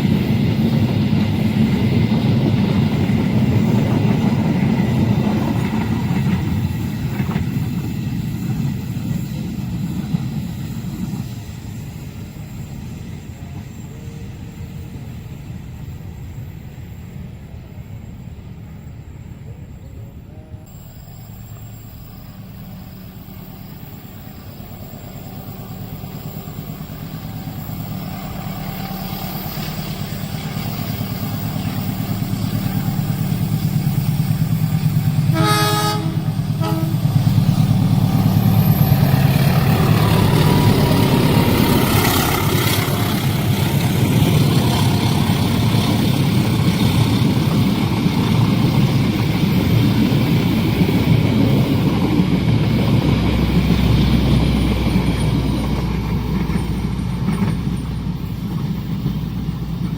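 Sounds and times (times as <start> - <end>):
train rumble: 0.0 - 59.9
train wheels on rails: 0.0 - 59.9
train horn: 35.2 - 37.4.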